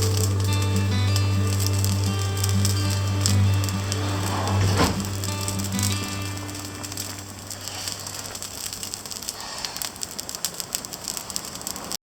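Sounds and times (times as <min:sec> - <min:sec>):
background music: 0:00.0 - 0:08.0
wood fire crackling: 0:00.0 - 0:12.0.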